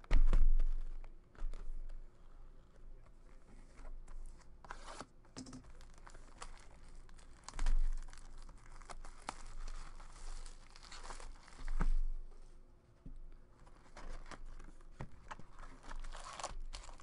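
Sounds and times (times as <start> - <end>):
foil wrapper crinkling and tearing: 5.7 - 12.1, 13.6 - 17.0.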